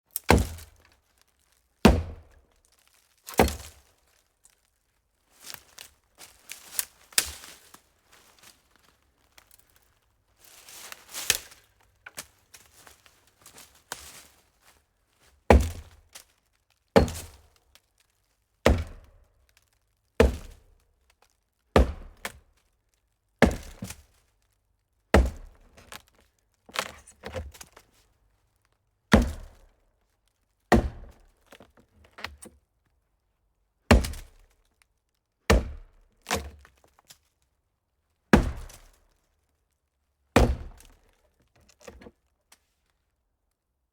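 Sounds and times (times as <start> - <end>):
axe chopping hollow tree trunk: 0.1 - 0.9, 1.8 - 2.4, 3.3 - 3.8, 15.5 - 16.0, 17.0 - 17.5, 18.6 - 19.2, 20.2 - 20.7, 21.7 - 22.4, 23.4 - 24.0, 25.1 - 26.0, 26.7 - 27.8, 29.1 - 29.7, 30.7 - 32.4, 33.9 - 34.5, 35.5 - 36.7, 38.3 - 39.0, 40.4 - 41.2.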